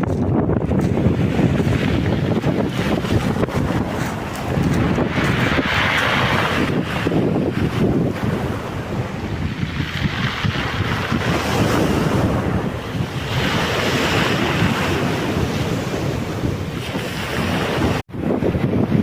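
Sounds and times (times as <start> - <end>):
wind buffeting microphone: 0.0 - 19.0
waves breaking on shore: 0.1 - 19.0.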